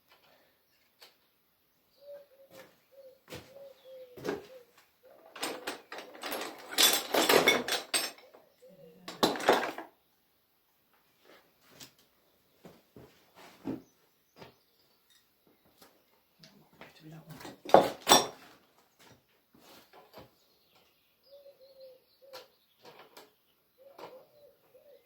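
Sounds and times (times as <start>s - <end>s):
metal fittings clattering: 5.4s - 8.4s, 17.5s - 18.5s.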